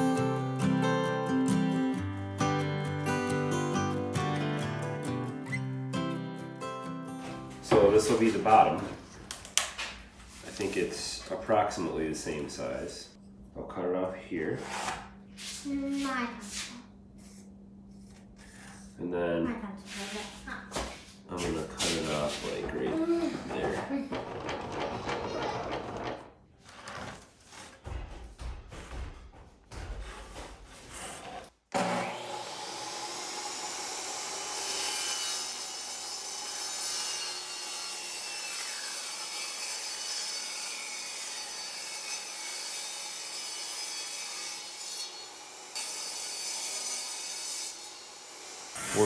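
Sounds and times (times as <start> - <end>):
saw cutting wood: 30.8 - 49.0.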